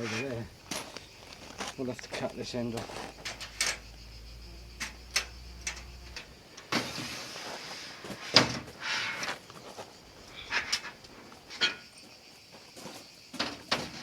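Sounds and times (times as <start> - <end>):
low hum: 2.4 - 6.6.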